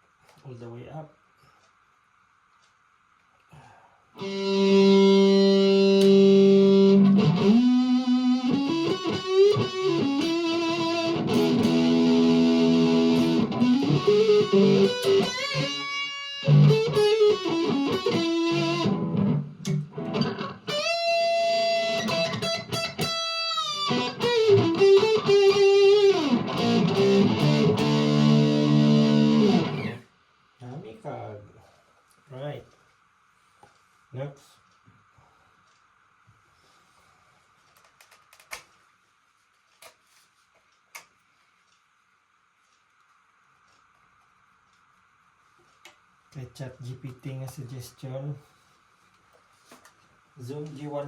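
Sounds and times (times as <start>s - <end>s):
distorted electric guitar: 4.2s - 30.1s.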